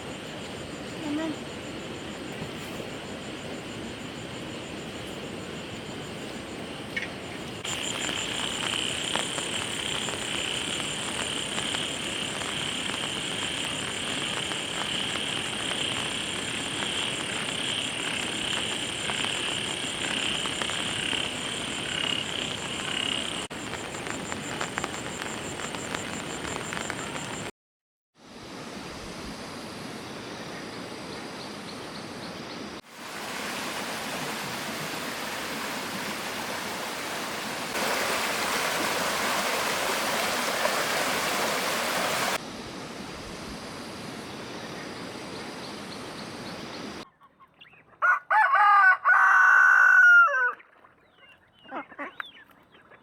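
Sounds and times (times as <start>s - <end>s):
background hiss: 0.0s - 27.5s, 28.2s - 47.0s
frogs and insects chorus: 0.0s - 27.5s, 37.7s - 47.1s.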